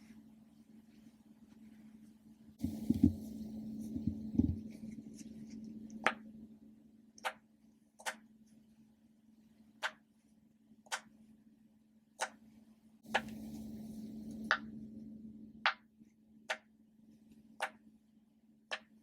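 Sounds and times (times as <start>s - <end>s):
plastic toys knocking and rustling: 2.6s - 4.8s.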